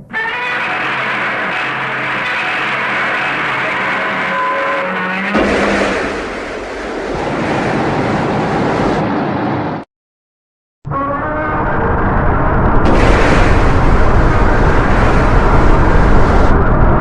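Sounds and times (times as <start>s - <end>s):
loud rushing noise: 1.1s - 9.8s, 12.4s - 17.0s.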